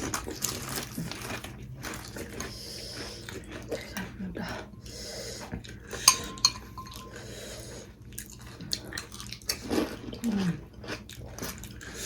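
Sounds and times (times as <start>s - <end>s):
utensil clinking against dish: 6.1s - 7.4s.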